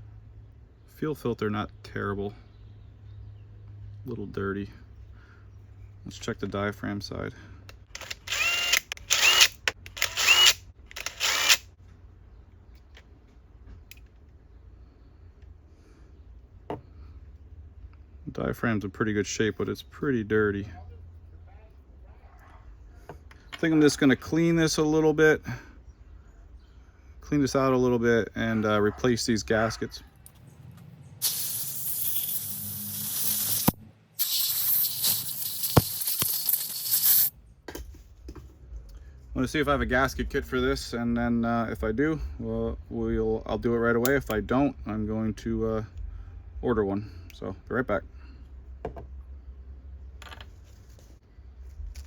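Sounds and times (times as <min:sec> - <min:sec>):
sharp clicks: 0:07.6 - 0:11.6
power driver whining: 0:07.6 - 0:11.7
hissing air sprays: 0:31.2 - 0:37.3.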